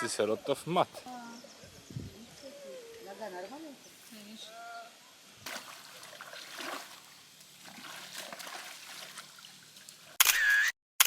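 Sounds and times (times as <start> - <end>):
muddy water splashing: 5.4 - 10.2.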